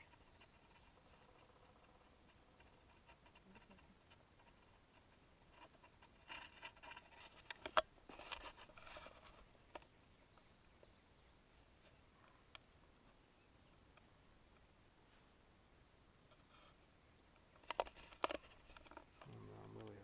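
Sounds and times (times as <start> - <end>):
faint rustling and crackling: 0.0 - 20.0
faint ticks: 11.8 - 12.8.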